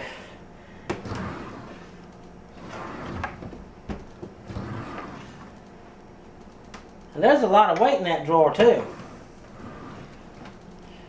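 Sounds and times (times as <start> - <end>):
drawer sliding on rails: 0.9 - 5.6, 8.5 - 10.6.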